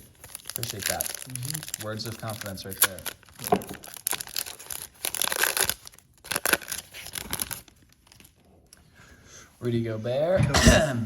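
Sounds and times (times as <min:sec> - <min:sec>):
plastic wrapper tearing and crinkling: 0:00.0 - 0:08.5.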